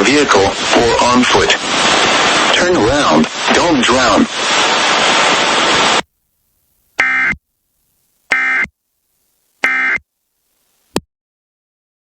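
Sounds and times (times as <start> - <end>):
digital data burst screeches: 7.0 - 7.3, 8.3 - 8.7.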